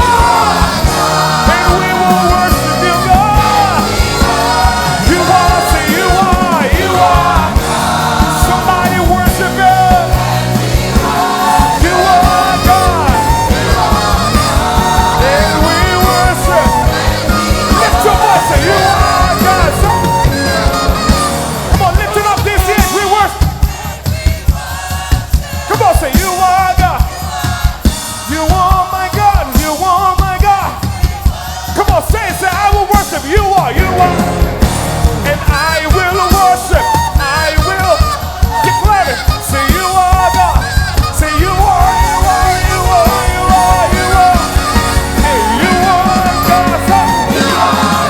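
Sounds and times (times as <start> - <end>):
band playing: 0.0 - 48.0
drum hits: 0.0 - 48.0
gospel singers: 0.0 - 48.0.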